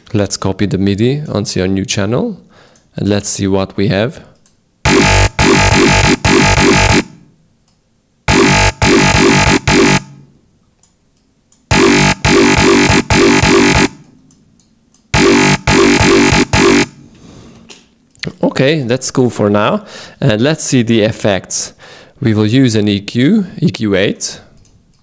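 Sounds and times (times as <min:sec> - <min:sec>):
distorted synth bass riff: 0:04.9 - 0:07.3, 0:08.3 - 0:10.3, 0:11.7 - 0:14.0, 0:15.2 - 0:17.0.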